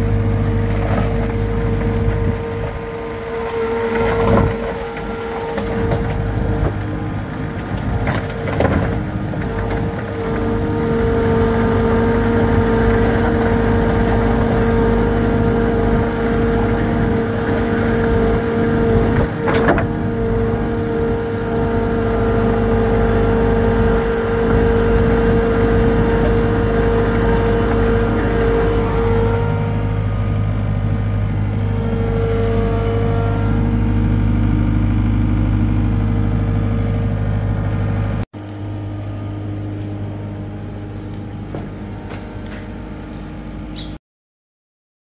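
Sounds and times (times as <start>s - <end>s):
engine running steadily: 0.0s - 44.0s.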